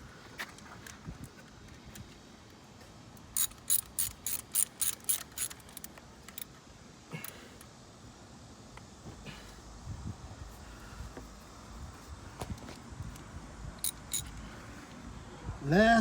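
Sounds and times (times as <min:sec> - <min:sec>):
socket ratchet wrench clicking: 0:03.2 - 0:06.5, 0:13.8 - 0:14.4.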